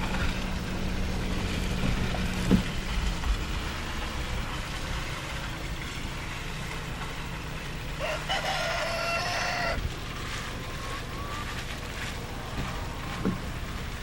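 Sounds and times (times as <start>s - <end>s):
steady background noise: 0.0s - 14.0s
rooster crowing: 8.0s - 9.8s.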